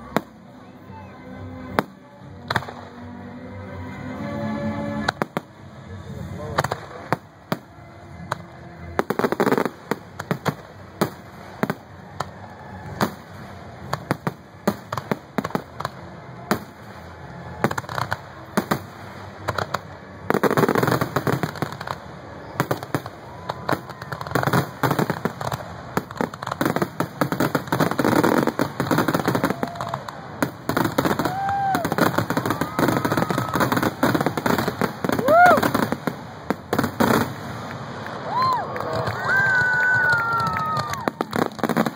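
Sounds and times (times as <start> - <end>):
fireworks crackling barrage: 0.0 - 41.9
firework bangs: 6.4 - 41.9
firework whistling: 26.6 - 36.2.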